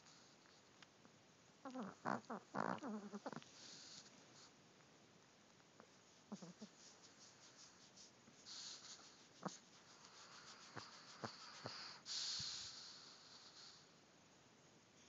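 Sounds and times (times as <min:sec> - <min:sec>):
hissing breath: 0:10.2 - 0:13.9.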